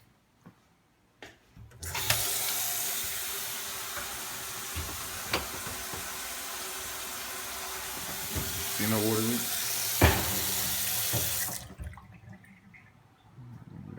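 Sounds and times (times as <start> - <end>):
water tap running: 1.8 - 12.2.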